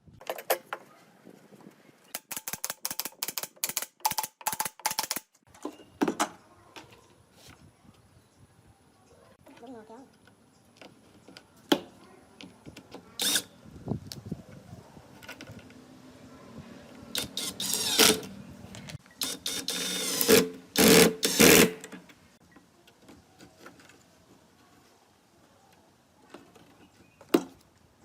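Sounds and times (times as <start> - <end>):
small electric tool spinning up: 17.2 - 18.3.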